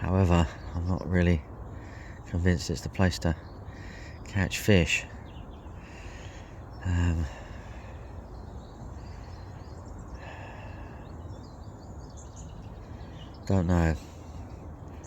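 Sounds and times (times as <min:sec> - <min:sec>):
outdoor background noise: 0:00.0 - 0:15.0
man murmuring: 0:06.8 - 0:07.5.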